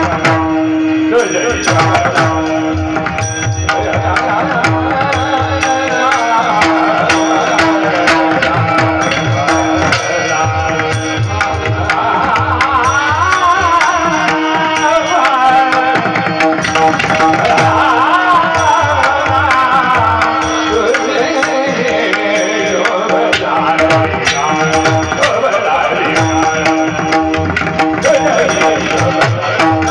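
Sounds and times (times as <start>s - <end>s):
hand drum rhythm: 0.0s - 29.9s
man singing ornamented phrases: 1.0s - 3.0s, 3.8s - 27.0s, 28.0s - 29.9s.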